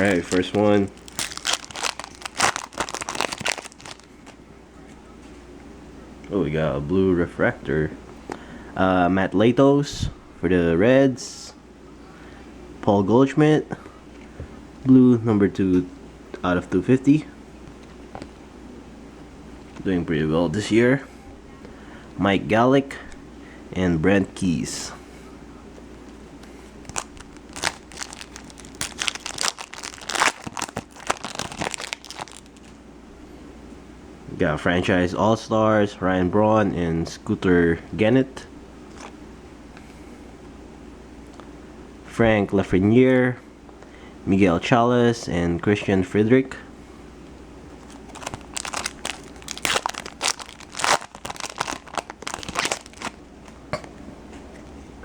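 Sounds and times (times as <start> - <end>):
foil wrapper tearing and crinkling: 0.0 - 4.4, 26.9 - 32.7, 47.8 - 53.2.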